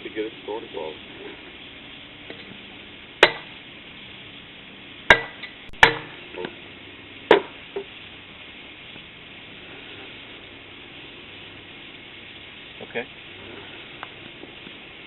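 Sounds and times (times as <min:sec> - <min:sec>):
hammer driving stake into ground: 0:03.2 - 0:03.6, 0:05.1 - 0:06.2.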